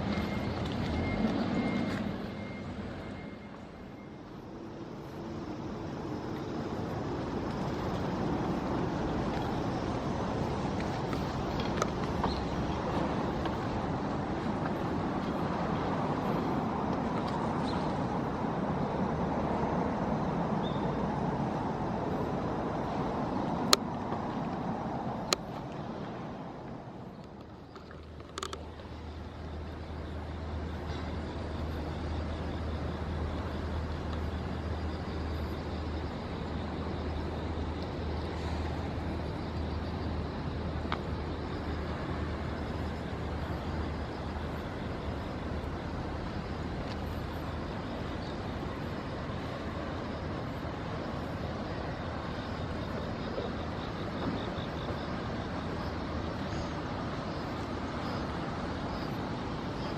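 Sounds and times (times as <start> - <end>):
road traffic rumble: 0.0 - 59.9.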